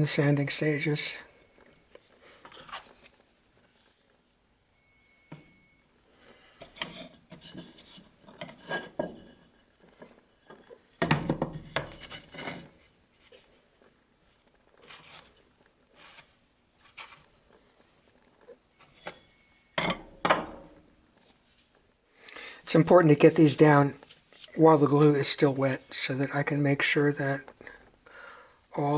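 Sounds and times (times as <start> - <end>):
wood pieces scraping and knocking: 6.6 - 13.5, 18.8 - 20.8.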